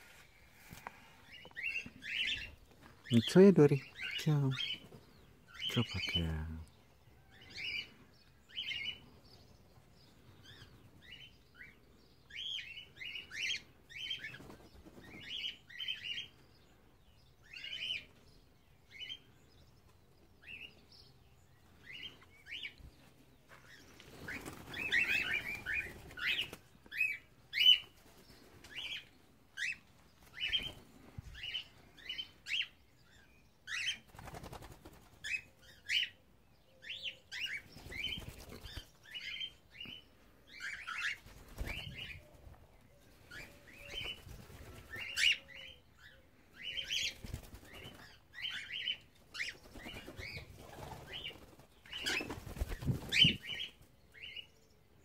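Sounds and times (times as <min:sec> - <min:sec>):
wings flapping: 0:24.0 - 0:26.7, 0:34.0 - 0:35.4, 0:37.7 - 0:39.0, 0:41.2 - 0:42.2, 0:43.8 - 0:45.3, 0:47.0 - 0:48.2, 0:49.4 - 0:53.8.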